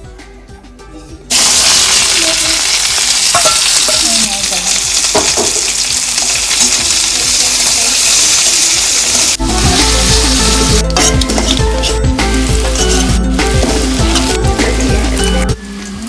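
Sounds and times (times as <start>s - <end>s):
onions sizzling in hot oil: 1.3s - 16.0s
stirring scrapes in a pan: 10.8s - 16.0s.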